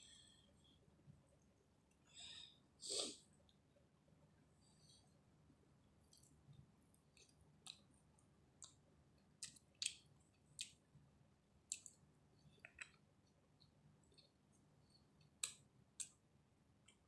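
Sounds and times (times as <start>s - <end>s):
wet chewing sounds: 9.4s - 10.8s, 11.7s - 13.1s.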